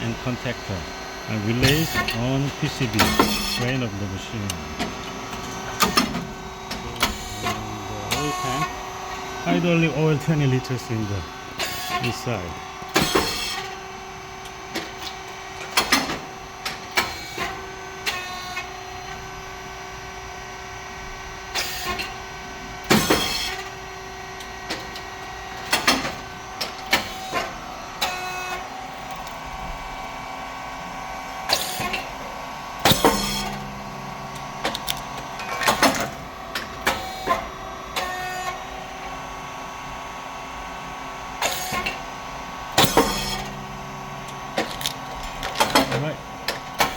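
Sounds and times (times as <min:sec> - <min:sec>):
hydraulic motor and pump hum: 0:00.0 - 0:46.9
sharp mechanical clacks: 0:42.8 - 0:43.6, 0:44.3 - 0:46.9.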